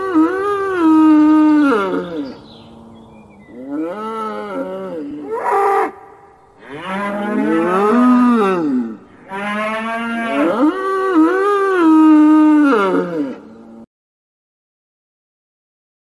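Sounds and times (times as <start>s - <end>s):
bull mooing: 0.0s - 13.8s.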